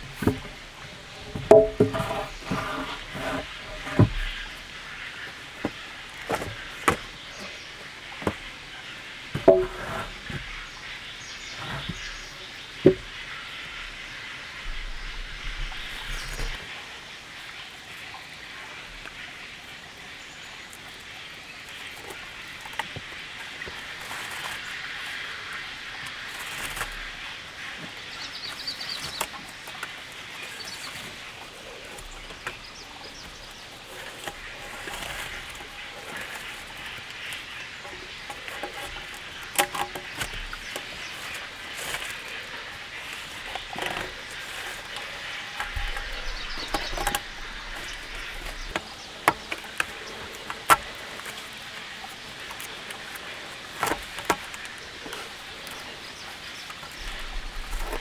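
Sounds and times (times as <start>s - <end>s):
sharp taps and knocks: 0.0s - 4.7s
steady outdoor noise: 0.0s - 58.0s.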